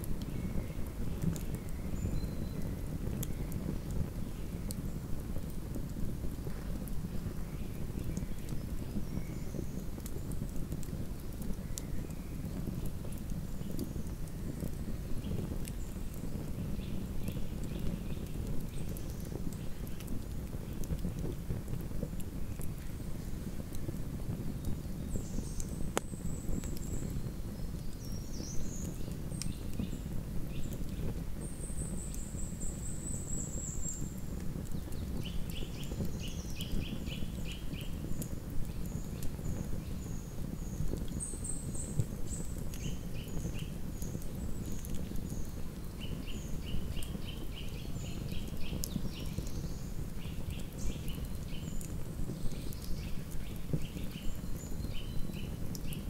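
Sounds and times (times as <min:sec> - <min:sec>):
campfire burning and snapping: 0:00.0 - 0:56.0
songbirds calling and trilling: 0:00.2 - 0:04.8, 0:24.5 - 0:56.0.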